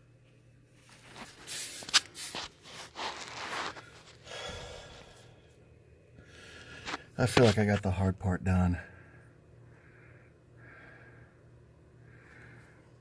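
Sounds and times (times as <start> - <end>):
body rustling and scraping: 0.8 - 4.9.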